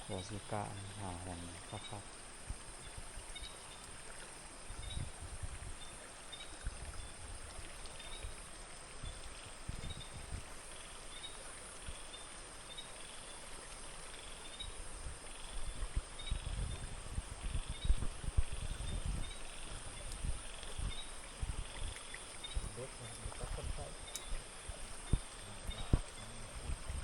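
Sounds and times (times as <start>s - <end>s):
stream water flowing: 0.0s - 27.0s
low thumps: 22.5s - 27.0s.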